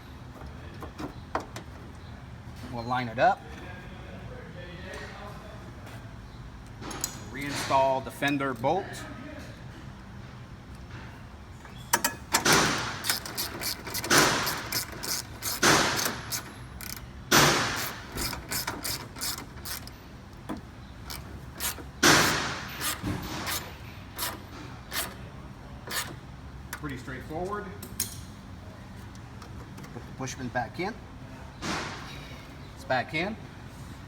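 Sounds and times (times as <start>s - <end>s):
hand ratchet clicking: 13.0s - 20.0s, 21.0s - 25.2s, 25.9s - 26.9s.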